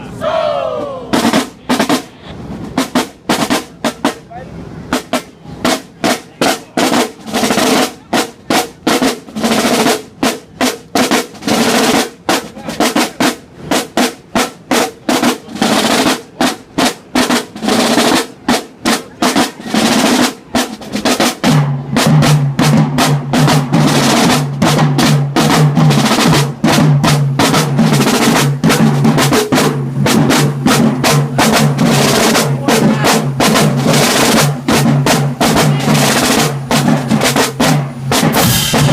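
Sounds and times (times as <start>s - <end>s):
snare drum rolls: 1.1s - 38.9s
bass drums: 21.0s - 38.9s.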